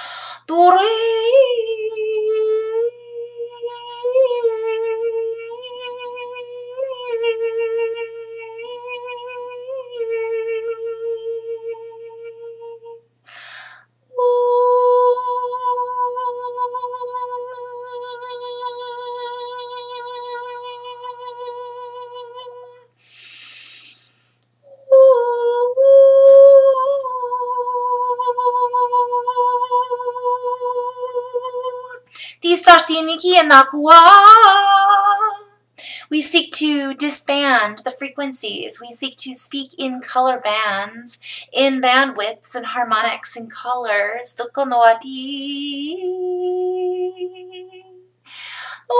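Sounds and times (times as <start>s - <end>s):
in-breath: 0.0s - 0.5s, 13.2s - 13.9s, 23.0s - 24.4s, 32.1s - 32.4s, 35.8s - 36.1s, 41.2s - 41.6s, 48.3s - 48.9s.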